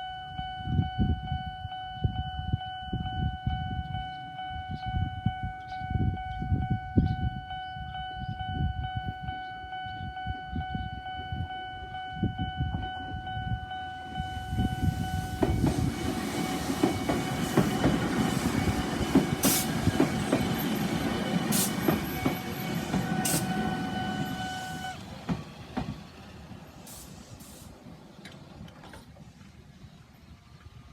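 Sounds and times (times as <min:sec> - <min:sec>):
level-crossing alarm steady tone: 0:09.2 - 0:25.0
train running noise: 0:12.3 - 0:30.9
sharp clicks of train: 0:14.5 - 0:29.7.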